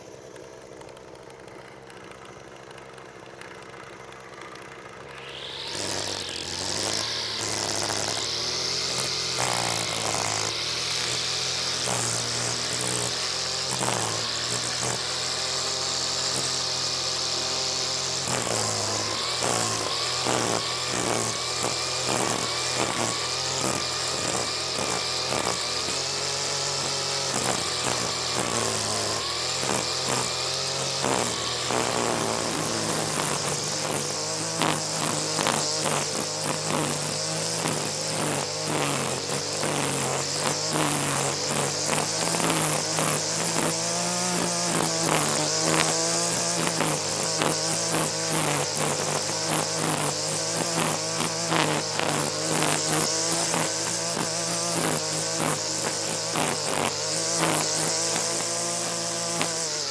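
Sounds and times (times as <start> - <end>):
hedge trimmer running: 0.0 - 59.9.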